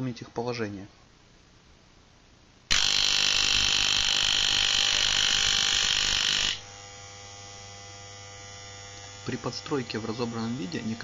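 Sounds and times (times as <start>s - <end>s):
clipper motor buzzing rattle: 2.7s - 7.0s.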